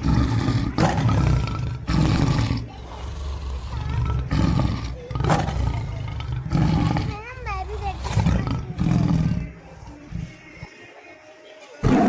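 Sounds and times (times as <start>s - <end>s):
tiger roaring: 0.0s - 10.3s.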